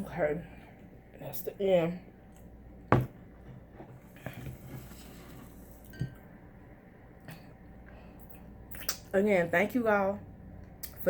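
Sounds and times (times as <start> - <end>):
dishes clinking: 5.8 - 6.3.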